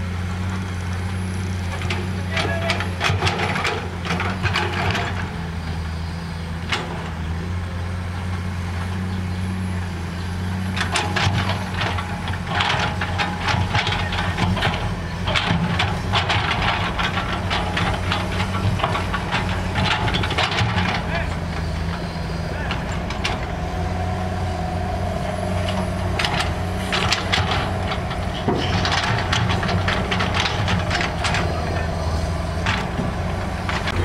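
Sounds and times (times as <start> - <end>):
diesel engine droning: 0.0 - 34.0
clattering and knocking: 10.8 - 34.0.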